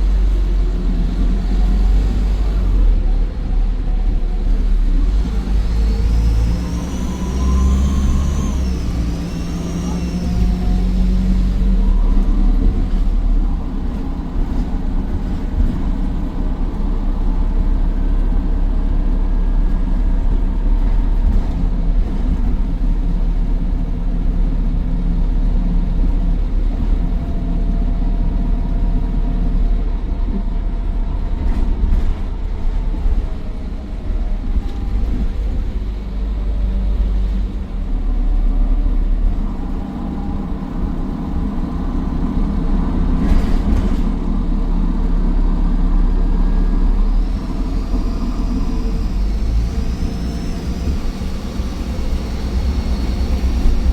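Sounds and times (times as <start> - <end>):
bus diesel engine rumble: 0.0 - 53.9
turbocharger whine: 4.2 - 13.6, 34.5 - 53.9.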